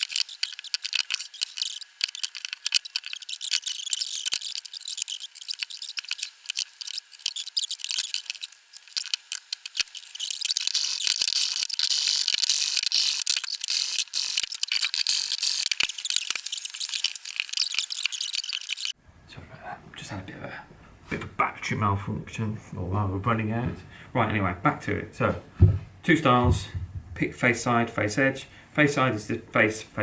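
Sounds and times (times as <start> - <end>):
electronic crackling and static: 0.0 - 19.0.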